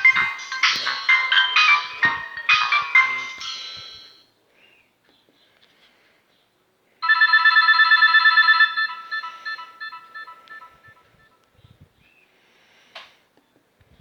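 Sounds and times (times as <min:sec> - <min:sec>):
polyphonic phone ringtone: 0:00.0 - 0:04.2, 0:07.0 - 0:11.3.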